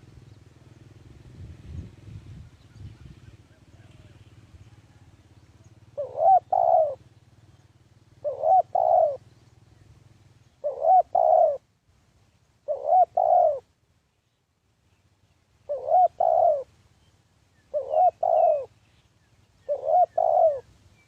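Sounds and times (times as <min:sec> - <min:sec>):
dove cooing: 0:03.2 - 0:09.3, 0:10.4 - 0:11.7, 0:12.6 - 0:13.7, 0:15.6 - 0:16.7, 0:17.6 - 0:18.8, 0:19.6 - 0:20.7.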